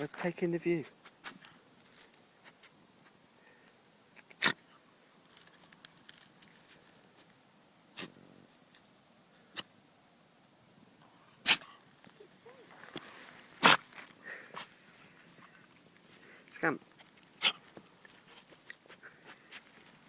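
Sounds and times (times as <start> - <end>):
dog sneezing: 4.2 - 4.6, 11.4 - 11.7, 13.6 - 13.9
faint rustling: 11.8 - 20.0.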